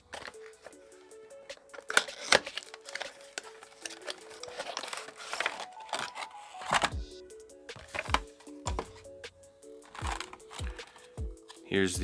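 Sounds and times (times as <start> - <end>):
plastic packaging crinkling: 0.0 - 0.8, 1.6 - 7.0, 9.7 - 11.6.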